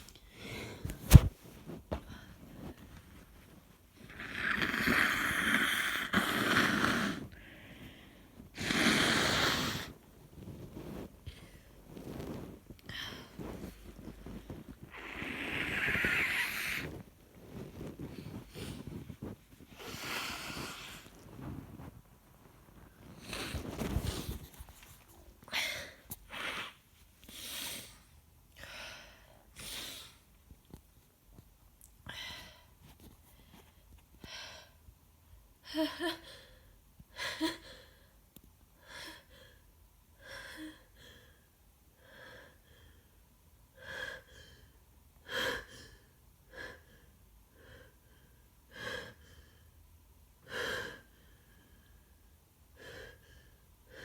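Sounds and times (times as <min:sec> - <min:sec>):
woman blowing her nose: 0:08.6 - 0:10.0.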